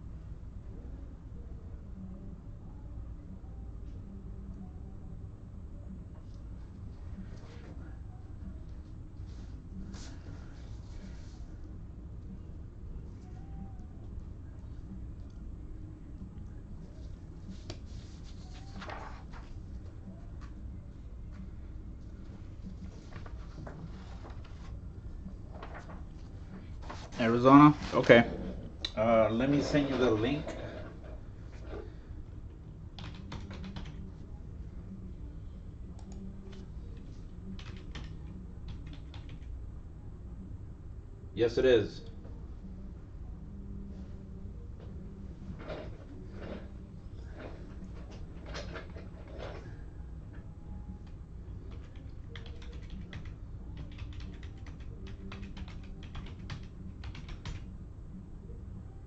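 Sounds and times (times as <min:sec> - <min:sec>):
steady low hum: 0:00.0 - 0:59.0
keyboard typing: 0:33.0 - 0:34.1, 0:37.5 - 0:39.5, 0:51.6 - 0:57.7.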